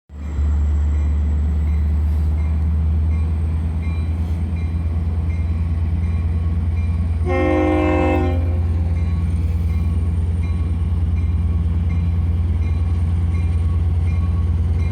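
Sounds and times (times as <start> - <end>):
locomotive engine rumble: 0.2 - 14.9
locomotive horn blast: 7.2 - 8.9.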